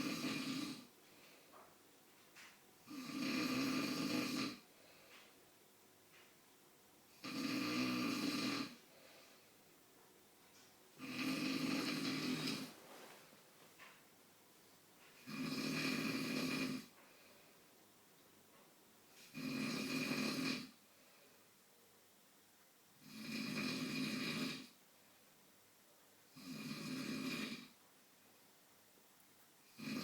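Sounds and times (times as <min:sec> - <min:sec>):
man snoring: 0:00.0 - 0:00.9, 0:02.8 - 0:04.6, 0:07.2 - 0:08.8, 0:11.0 - 0:12.8, 0:15.2 - 0:17.0, 0:19.2 - 0:20.8, 0:23.0 - 0:24.8, 0:26.3 - 0:27.8, 0:29.7 - 0:30.0.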